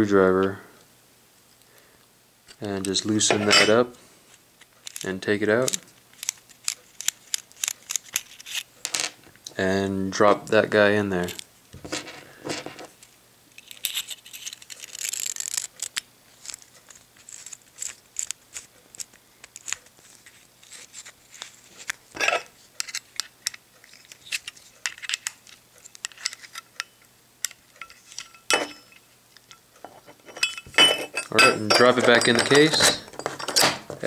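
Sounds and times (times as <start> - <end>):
small metal clicks and scrapes: 4.6 - 8.7, 12.9 - 33.6.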